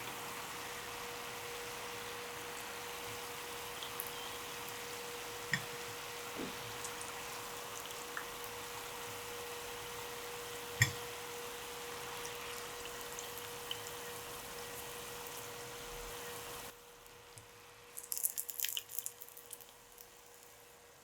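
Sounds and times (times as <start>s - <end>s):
oil sizzling: 0.0s - 16.8s, 17.8s - 20.8s
small pops in frying oil: 6.4s - 7.2s, 10.8s - 11.0s, 17.0s - 20.6s.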